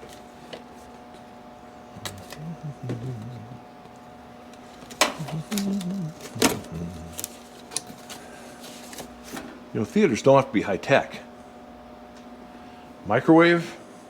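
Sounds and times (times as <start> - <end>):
steady electrical hum: 0.0 - 14.0
low muttering: 1.9 - 3.7, 5.1 - 7.3.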